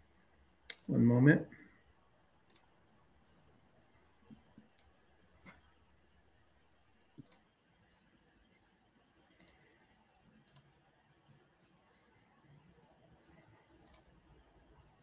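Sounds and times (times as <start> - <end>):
computer mouse clicks: 0.7 - 1.0, 2.5 - 2.7, 7.1 - 7.5, 9.3 - 9.7, 10.4 - 10.8, 13.8 - 14.1.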